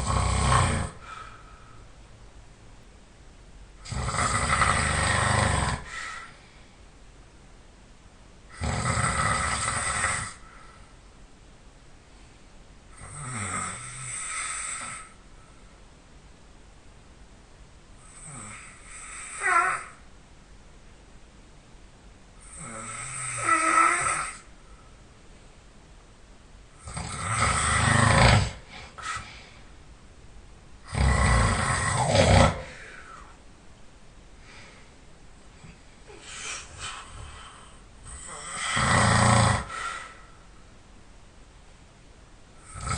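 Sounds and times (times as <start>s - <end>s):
man snoring: 0.0s - 1.2s, 3.8s - 6.3s, 8.5s - 10.5s, 13.0s - 15.2s, 18.0s - 20.0s, 22.4s - 24.5s, 26.8s - 28.7s, 30.8s - 33.3s, 37.1s - 40.0s, 42.6s - 42.9s.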